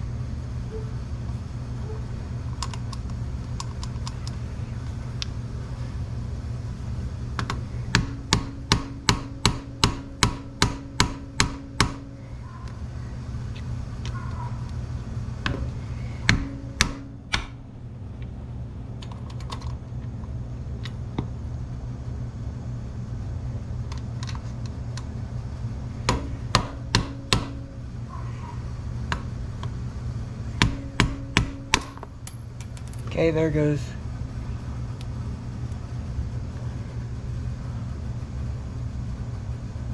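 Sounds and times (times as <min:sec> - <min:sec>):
steady low hum: 0:00.0 - 0:39.9
sharp metal taps ringing: 0:30.6 - 0:33.2.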